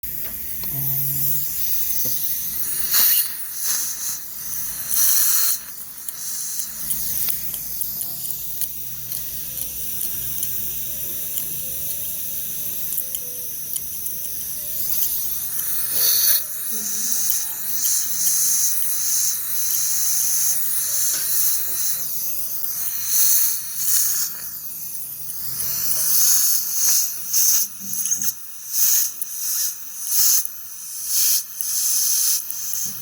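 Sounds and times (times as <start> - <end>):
dental equipment hissing: 0.0 - 33.0
spray bursts: 0.1 - 7.8.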